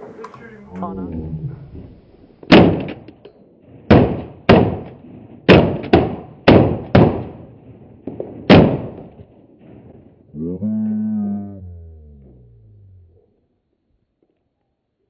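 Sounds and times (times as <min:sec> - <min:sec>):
shotgun shots with echo: 0:02.5 - 0:03.1, 0:03.8 - 0:09.8.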